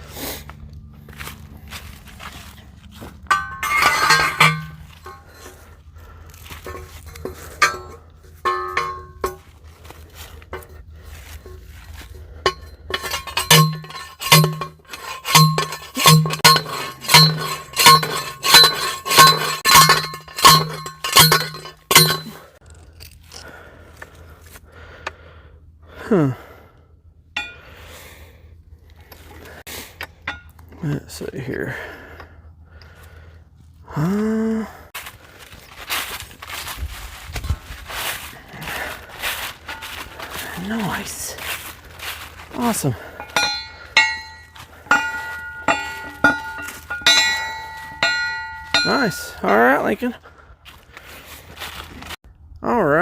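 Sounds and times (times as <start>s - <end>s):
post driver clanging on steel post: 3.2s - 5.7s, 6.4s - 9.6s, 11.4s - 22.6s, 27.4s - 27.8s, 29.0s - 30.8s, 42.4s - 50.0s.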